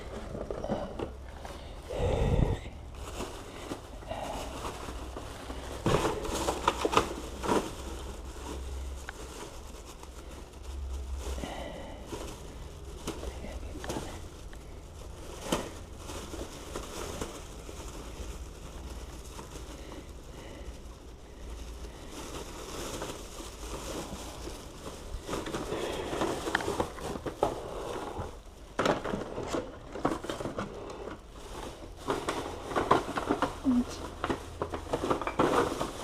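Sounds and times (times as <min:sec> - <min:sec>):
steady low hum: 0:00.0 - 0:35.9
crinkling and rustling handling: 0:00.0 - 0:36.0.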